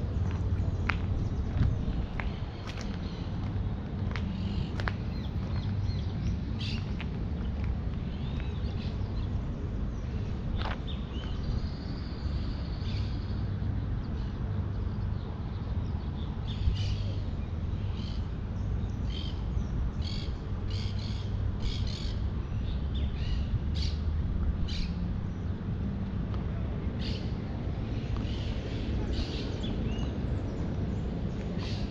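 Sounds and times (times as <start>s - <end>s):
birds calling harshly: 27.9s - 31.9s.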